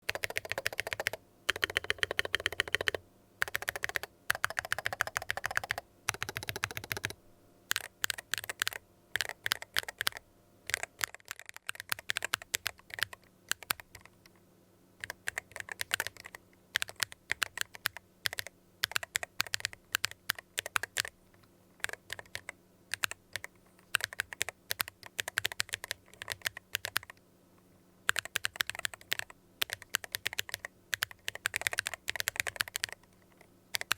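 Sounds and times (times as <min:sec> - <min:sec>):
mechanical keyboard typing: 0:00.0 - 0:14.3, 0:15.0 - 0:21.2, 0:21.8 - 0:27.2, 0:28.1 - 0:33.1.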